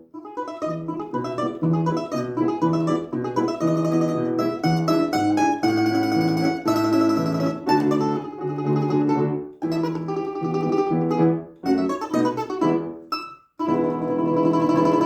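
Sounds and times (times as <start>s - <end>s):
plucked string instrument melody: 0.0s - 15.0s.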